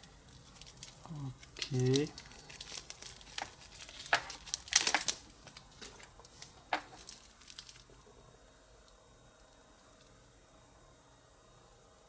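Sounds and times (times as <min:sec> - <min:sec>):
plastic wrapping crinkling: 0:00.0 - 0:08.0.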